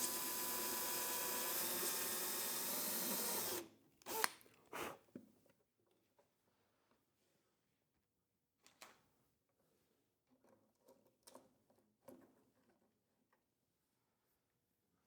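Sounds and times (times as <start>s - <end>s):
electric drill drilling: 0.0s - 4.4s.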